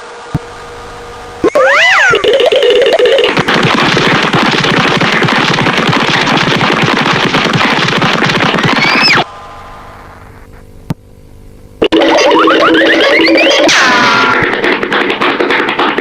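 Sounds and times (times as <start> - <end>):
rapid cartoon rattle: 1.4 - 9.2, 11.8 - 16.0
rising whistle: 8.8 - 10.0.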